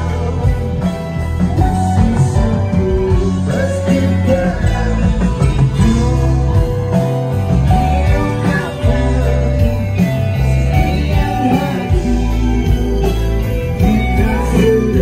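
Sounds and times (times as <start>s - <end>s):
person singing: 0.0s - 15.0s
rock band playing: 0.0s - 15.0s.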